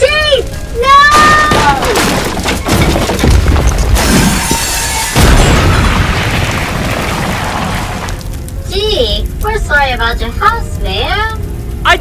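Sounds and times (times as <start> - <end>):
crash and shattering glass: 1.0 - 8.3
loud crash: 1.2 - 8.2.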